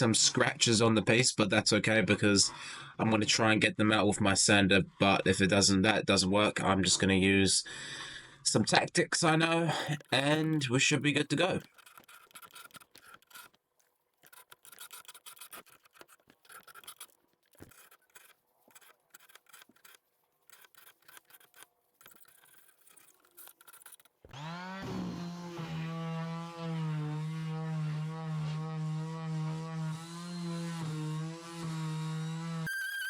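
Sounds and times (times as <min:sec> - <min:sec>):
hand scraper rasping on wood: 0:09.9 - 0:32.7
electric sander humming: 0:24.3 - 0:32.8.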